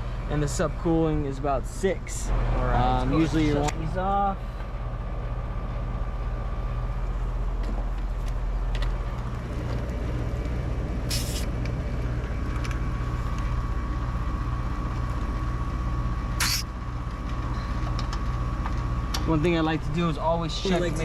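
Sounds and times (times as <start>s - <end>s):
air conditioner humming: 0.0s - 21.0s
refrigerant hiss: 11.1s - 11.5s, 16.4s - 16.7s.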